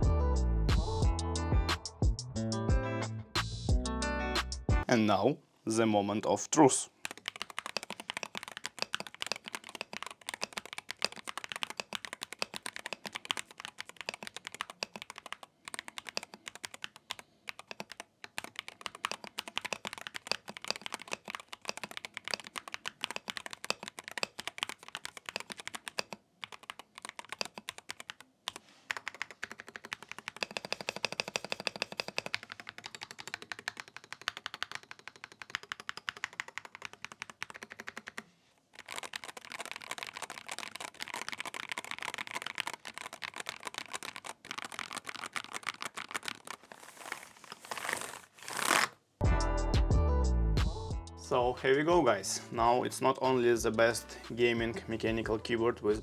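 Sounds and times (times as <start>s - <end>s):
keyboard typing clicks: 7.0s - 38.2s, 38.8s - 46.6s.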